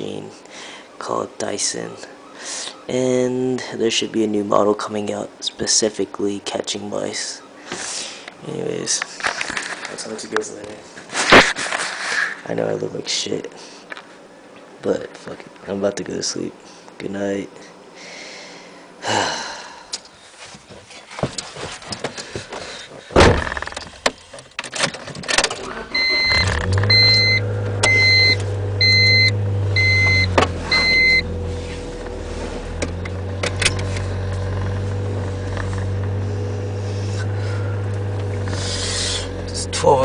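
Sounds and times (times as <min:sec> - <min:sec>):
car door shutting: 0:23.1 - 0:24.2, 0:24.8 - 0:38.9
car engine idling: 0:25.6 - 0:40.0
dashboard warning chime: 0:25.8 - 0:31.4.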